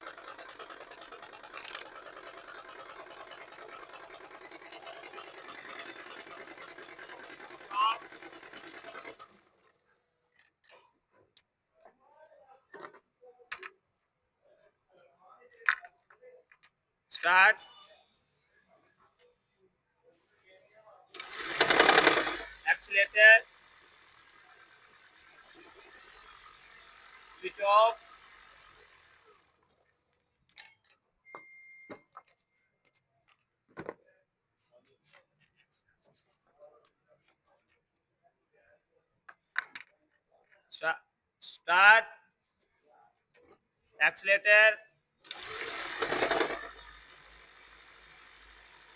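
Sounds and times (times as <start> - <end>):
short high beep: 31.3 - 32.1.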